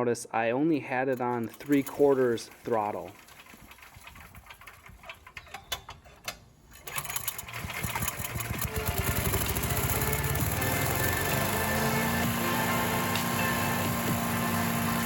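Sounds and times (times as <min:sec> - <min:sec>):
chipper shredder engine starting: 0:01.1 - 0:05.5, 0:06.7 - 0:15.0.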